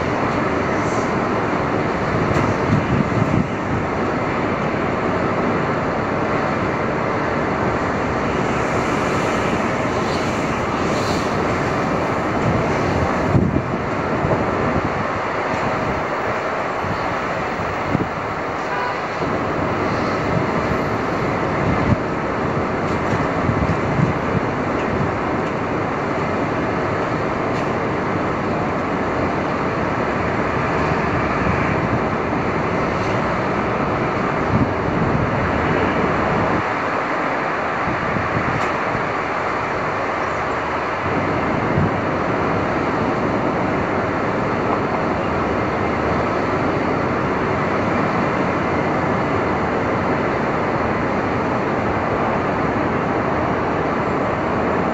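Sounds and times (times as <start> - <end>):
passing vehicles: 0.0 - 54.9.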